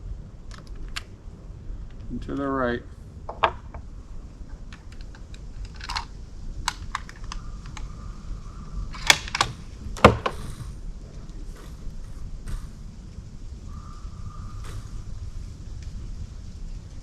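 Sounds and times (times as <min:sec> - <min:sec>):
rifle clicks and metallic knocks: 0:03.3 - 0:03.8, 0:04.7 - 0:07.9, 0:08.9 - 0:10.4.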